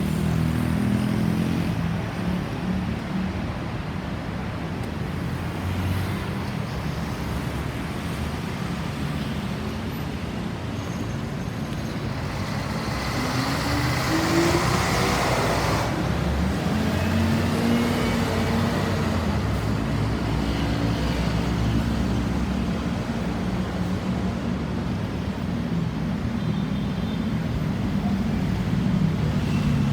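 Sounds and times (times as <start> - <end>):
road traffic noise: 0.0 - 29.9.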